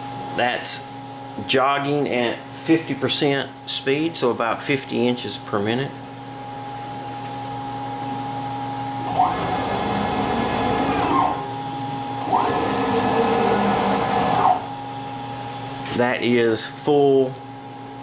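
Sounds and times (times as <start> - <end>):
steady high motor whine: 7.9 - 15.9
stepper motor whirring: 9.0 - 14.8.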